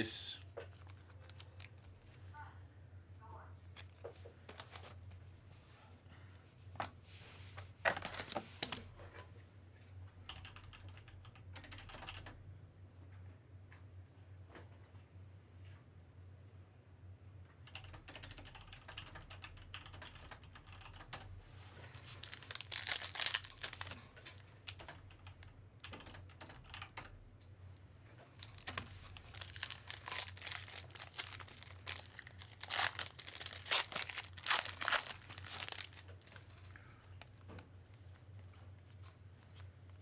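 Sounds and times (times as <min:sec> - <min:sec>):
cards clicking and rustling: 0:00.6 - 0:02.2, 0:03.7 - 0:05.1, 0:07.6 - 0:08.9, 0:21.8 - 0:24.9, 0:28.4 - 0:38.2
wrapper tearing and crinkling: 0:00.8 - 0:02.1, 0:07.9 - 0:08.4, 0:21.9 - 0:24.0, 0:28.4 - 0:36.6
low steady hum: 0:21.4 - 0:40.0.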